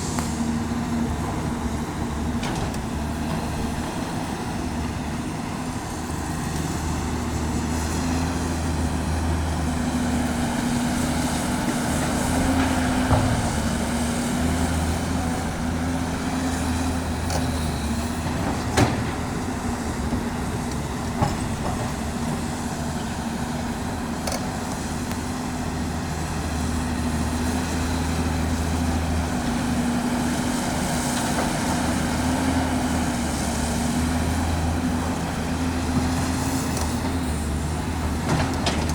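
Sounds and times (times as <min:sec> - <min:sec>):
excavator diesel engine working: 0:00.0 - 0:38.9.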